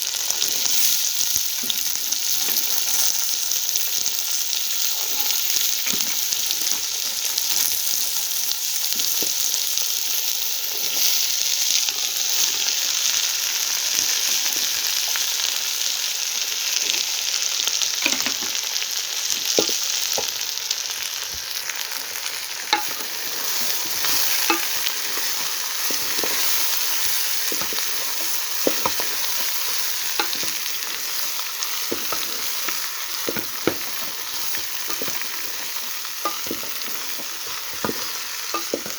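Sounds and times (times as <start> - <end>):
food sizzling in a pan: 0.0 - 38.9
utensil clicking against pan: 22.7 - 38.9.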